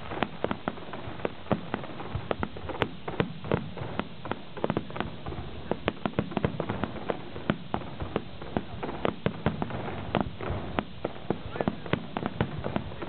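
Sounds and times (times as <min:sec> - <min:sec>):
fireworks crackling and popping: 0:00.0 - 0:13.0
steady hiss: 0:00.0 - 0:13.0.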